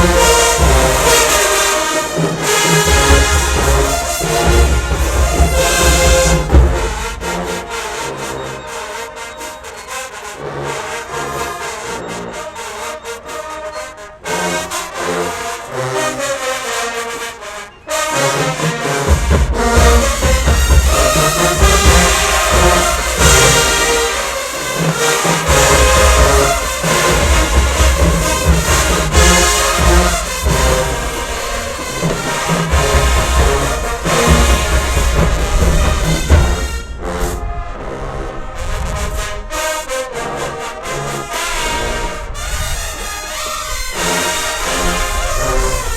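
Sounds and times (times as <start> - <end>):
heavy low drum beats: 0.0 - 8.2, 19.1 - 37.5
marching band playing: 0.0 - 45.9.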